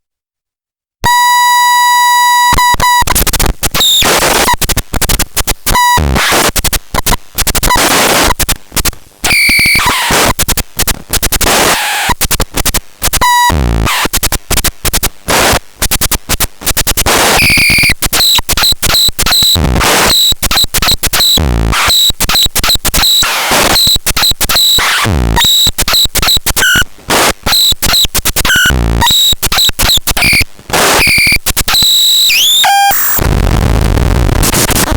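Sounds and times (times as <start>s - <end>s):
harsh electronic buzzing tone: 1.0s - 8.5s, 9.2s - 10.6s, 11.2s - 12.5s, 13.1s - 14.6s, 15.3s - 34.9s
stuttering static bursts: 2.6s - 34.9s.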